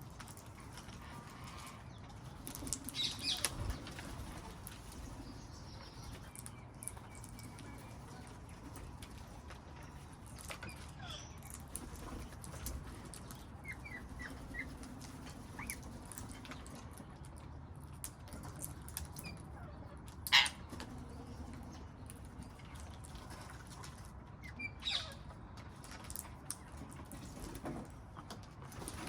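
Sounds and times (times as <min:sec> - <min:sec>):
parrots chirping: 0:24.4 - 0:25.2.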